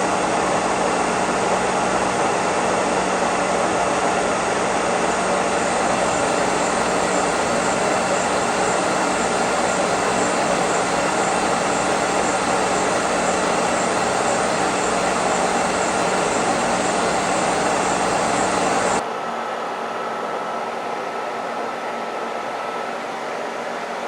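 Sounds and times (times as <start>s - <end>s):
milling machine running: 0.0s - 19.0s.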